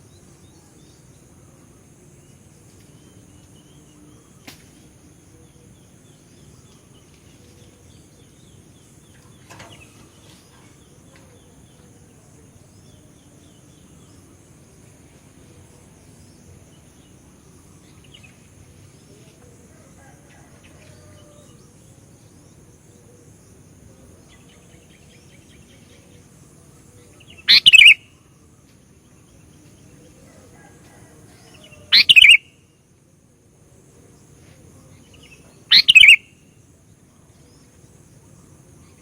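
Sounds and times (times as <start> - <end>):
faint bird chirps: 24.2 - 32.7, 34.8 - 36.6
bird calls: 27.2 - 28.1, 30.0 - 32.5, 35.1 - 36.3.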